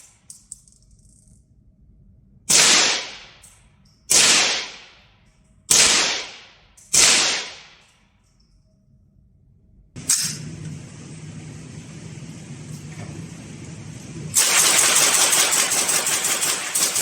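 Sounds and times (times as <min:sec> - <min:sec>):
rifle shots with reverberation: 0:02.5 - 0:03.4, 0:04.1 - 0:05.1, 0:05.7 - 0:07.8, 0:14.4 - 0:17.0.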